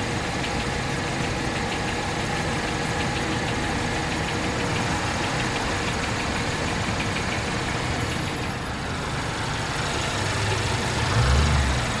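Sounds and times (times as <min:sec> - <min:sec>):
fast light engine tapping: 0:00.0 - 0:08.7
car engine idling: 0:00.0 - 0:12.0
low engine rumble: 0:00.0 - 0:12.0.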